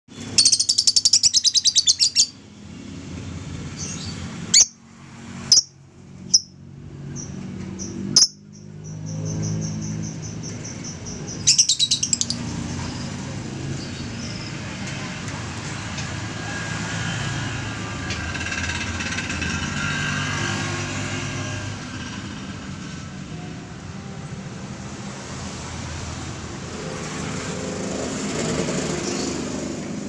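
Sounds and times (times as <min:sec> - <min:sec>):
lovebird chirping and shrieking: 0:00.3 - 0:02.4, 0:03.8 - 0:04.8, 0:05.4 - 0:06.6, 0:09.5 - 0:14.6.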